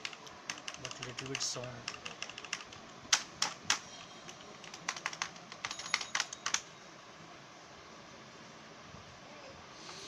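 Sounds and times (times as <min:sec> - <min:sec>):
mechanical keyboard clicks: 0:00.0 - 0:06.6.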